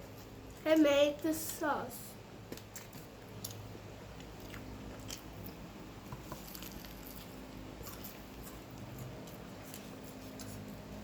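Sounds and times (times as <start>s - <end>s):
person chewing sandwich: 2.6s - 11.0s.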